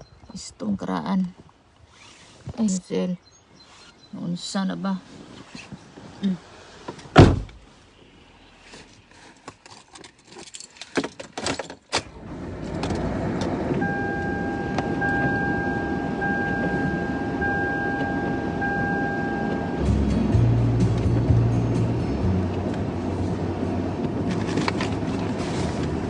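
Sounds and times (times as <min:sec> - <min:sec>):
keys jangling: 0:09.6 - 0:11.8
car running rushing noise: 0:12.1 - 0:26.0
electronic warning tone: 0:13.8 - 0:19.9.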